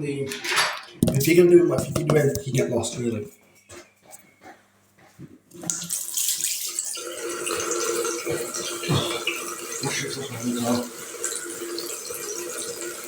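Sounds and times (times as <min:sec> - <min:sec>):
water running: 0:05.5 - 0:13.0.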